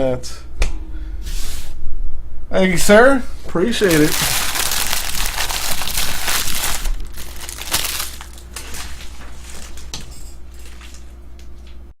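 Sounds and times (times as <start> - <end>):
scattered crackles and clicks: 3.8 - 9.9
packaging crinkling and rustling: 3.8 - 11.2.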